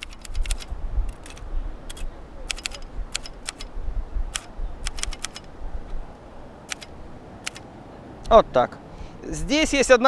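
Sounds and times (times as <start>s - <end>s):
typewriter key strikes: 0.0s - 5.6s, 6.7s - 7.7s.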